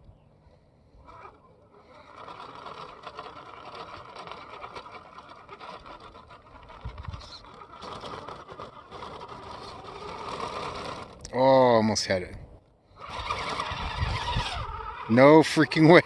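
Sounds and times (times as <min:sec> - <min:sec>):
electric motor whining: 0:00.9 - 0:11.4, 0:12.9 - 0:16.0
tires scrabbling on rock: 0:01.0 - 0:12.3, 0:12.9 - 0:16.0.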